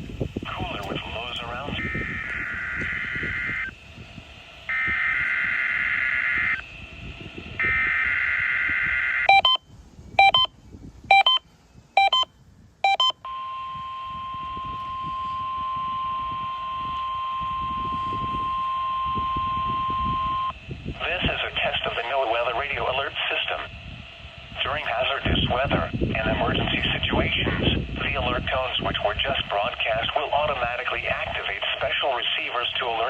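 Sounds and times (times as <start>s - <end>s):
radio hiss: 0.0s - 9.6s, 13.7s - 33.0s
steady warning alarm tone: 0.0s - 28.5s
buzzy digital data bursts: 0.2s - 9.6s, 13.6s - 33.0s
short beeps: 9.2s - 20.6s.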